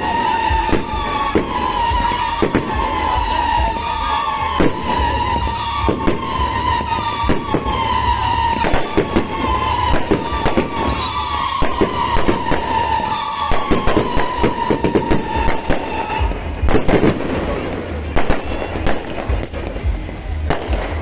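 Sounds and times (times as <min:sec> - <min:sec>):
tone gliding downward: 0:00.0 - 0:15.5
fireworks bangs and crackles: 0:00.0 - 0:21.0.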